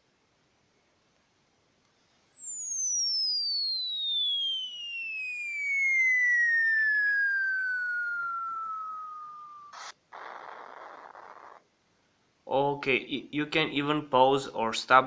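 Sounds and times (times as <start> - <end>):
whistling tone gliding down: 2.0 - 10.0
short burst of noise: 6.8 - 11.6.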